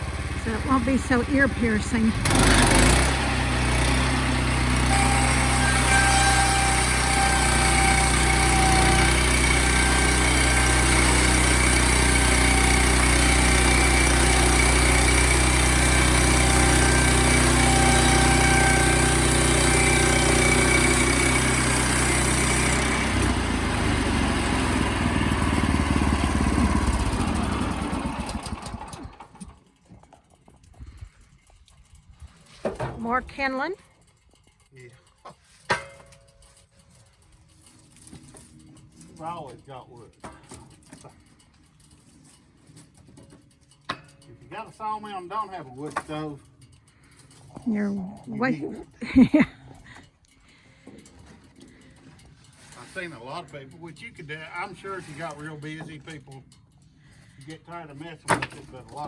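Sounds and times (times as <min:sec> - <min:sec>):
sawmill engine running: 0:00.0 - 0:29.5
high squeal: 0:04.9 - 0:09.0.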